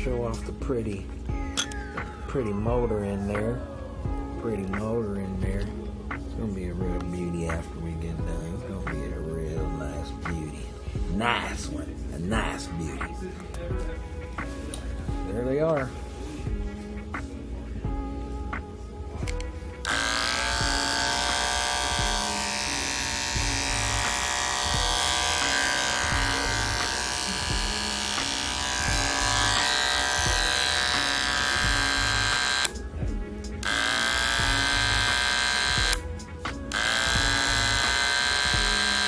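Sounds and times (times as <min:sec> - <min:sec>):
background music with a beat: 0:00.0 - 0:39.0
hair clipper buzzing: 0:19.3 - 0:32.8, 0:33.6 - 0:36.0, 0:36.6 - 0:39.0.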